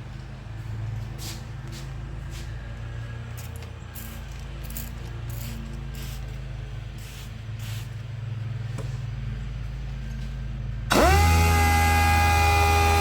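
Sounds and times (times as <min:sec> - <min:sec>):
sander motor whining: 0:10.9 - 0:13.0.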